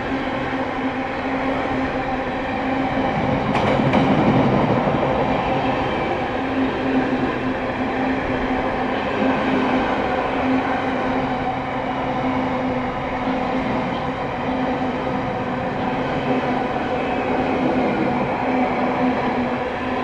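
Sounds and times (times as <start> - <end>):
train droning: 0.0 - 20.0
train rumbling: 0.0 - 20.0.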